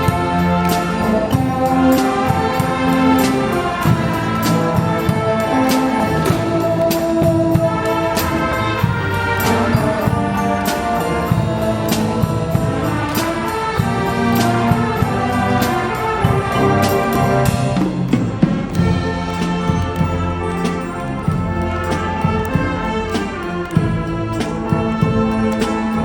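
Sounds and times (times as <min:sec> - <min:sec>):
drums keeping steady beat: 0:00.0 - 0:26.0
wind band playing: 0:00.0 - 0:26.0.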